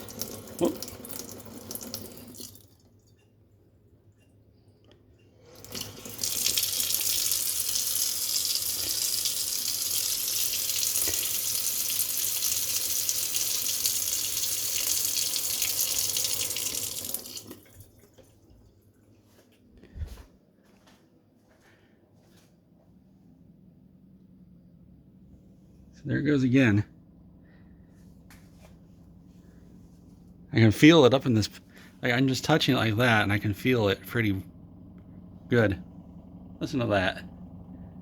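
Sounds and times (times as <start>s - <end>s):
faucet running into sink: 0.0s - 2.9s, 5.4s - 18.4s.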